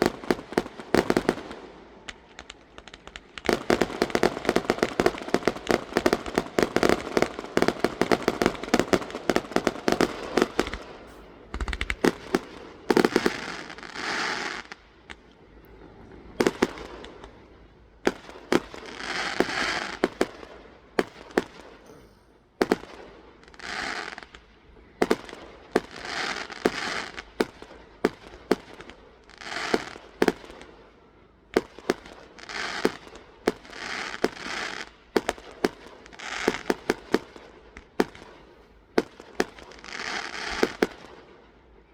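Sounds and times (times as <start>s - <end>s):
firework bangs: 0.0s - 14.7s, 18.0s - 24.4s
fireworks cracking: 0.0s - 15.8s, 16.4s - 17.4s, 18.0s - 24.5s
crackling hiss: 0.0s - 27.4s.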